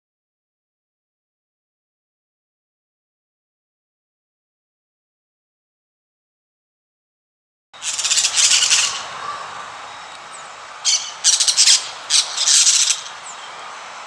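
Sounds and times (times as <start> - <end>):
parrot squawking: 7.8 - 10.0, 10.8 - 13.2.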